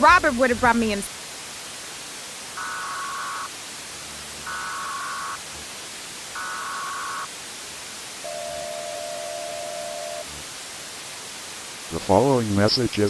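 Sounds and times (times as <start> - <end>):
static hiss: 0.0 - 13.0
data-burst header tones: 2.6 - 7.3, 8.2 - 10.5.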